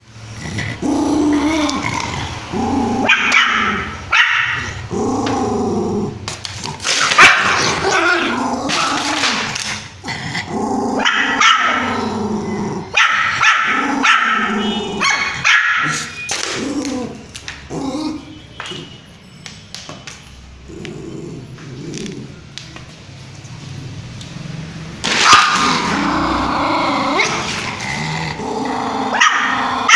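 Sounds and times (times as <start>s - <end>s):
puppy barking and growling: 0.2s - 6.2s, 6.8s - 18.3s, 25.0s - 29.9s.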